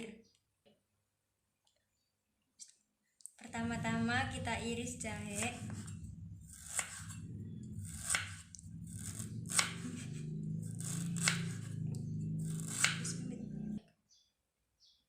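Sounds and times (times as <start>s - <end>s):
knife slicing ginger: 6.5s - 7.2s, 7.8s - 11.8s, 12.4s - 13.8s.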